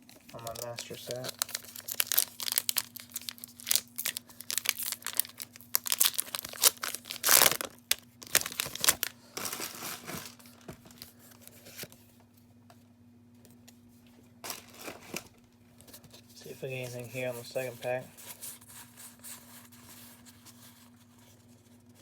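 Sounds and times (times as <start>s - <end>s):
cards being handled: 0.3s - 3.8s
foil wrapper crinkling and tearing: 0.3s - 11.2s, 14.4s - 15.2s.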